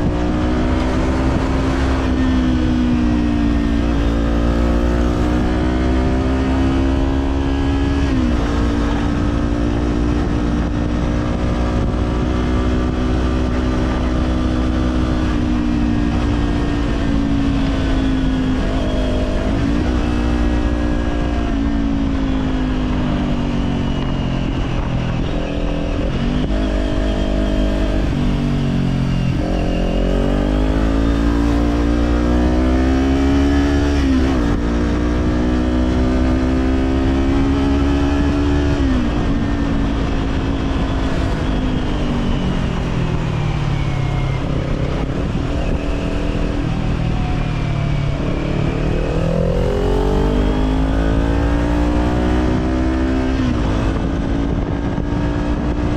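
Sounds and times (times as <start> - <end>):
motorcycle engine running: 0.0 - 55.9.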